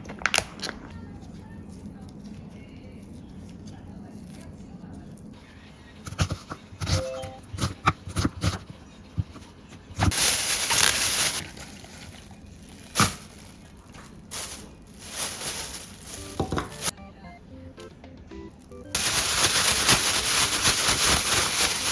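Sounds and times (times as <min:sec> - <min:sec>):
utensils and cookware knocking: 0:16.3 - 0:16.9.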